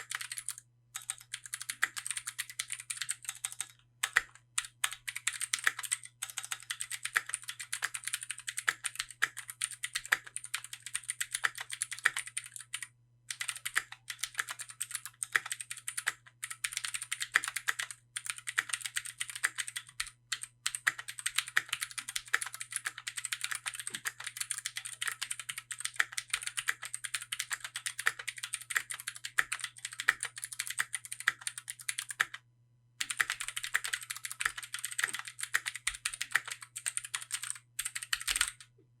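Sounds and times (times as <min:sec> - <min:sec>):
mechanical keyboard typing: 0:00.0 - 0:32.4, 0:33.0 - 0:38.7.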